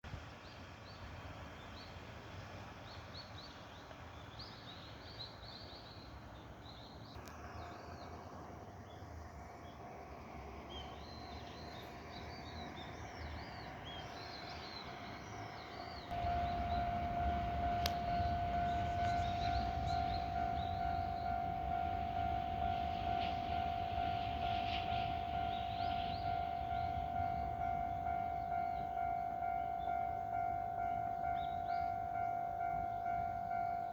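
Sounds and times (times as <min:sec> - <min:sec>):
small birds chirping: 0:10.6 - 0:33.9
low rumble: 0:16.1 - 0:28.6
level-crossing warning alarm: 0:16.1 - 0:33.9.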